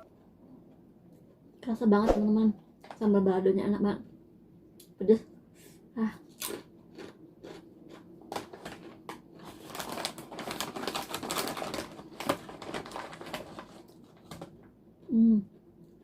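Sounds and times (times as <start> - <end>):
crisp chips being chewed: 6.3 - 14.5.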